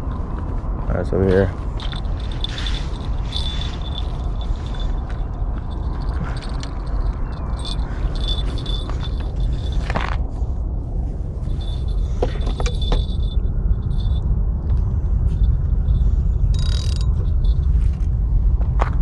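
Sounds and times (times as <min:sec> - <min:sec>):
wind buffeting microphone: 0:00.0 - 0:19.0
light metallic jingling: 0:00.9 - 0:10.3, 0:11.4 - 0:14.3, 0:15.3 - 0:18.0.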